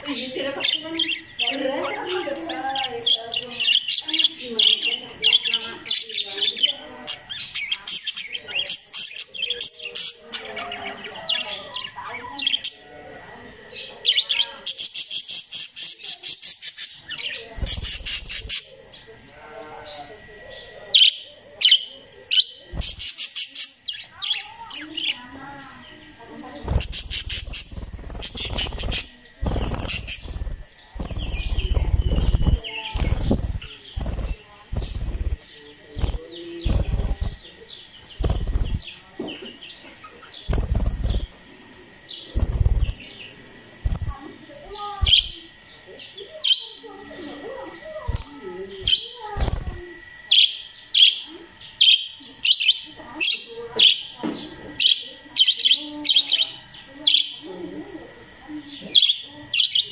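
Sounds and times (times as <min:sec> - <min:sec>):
parakeets chirping and chattering: 0:00.0 - 0:59.9
wing flapping: 0:17.4 - 0:18.8, 0:22.7 - 0:23.4, 0:26.3 - 0:39.2, 0:40.3 - 0:45.4, 0:47.7 - 0:50.2.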